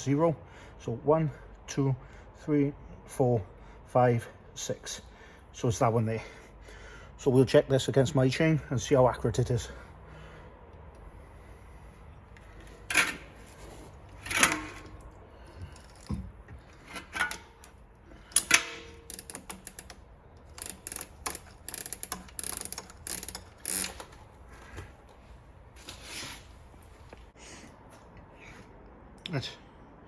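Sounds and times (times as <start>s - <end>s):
bicycle chain clicking and rattling: 12.6s - 24.3s.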